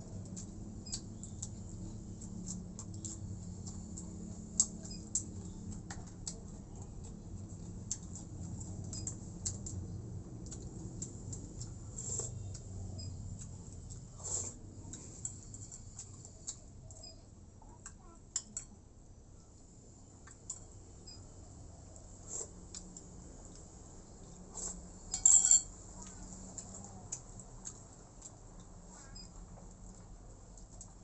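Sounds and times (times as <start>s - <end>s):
chewing clicks: 0.2s - 18.7s, 25.9s - 31.0s
dishware clinking: 25.1s - 25.7s
tableware clicks: 25.1s - 25.7s.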